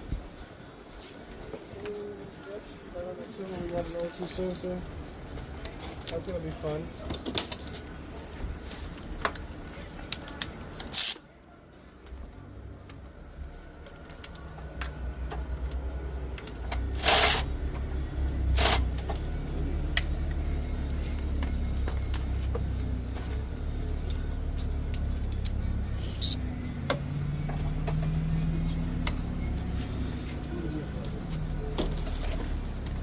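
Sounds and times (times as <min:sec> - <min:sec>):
hand tools clicking and clinking: 0:07.0 - 0:07.9, 0:26.2 - 0:26.4, 0:31.7 - 0:33.0.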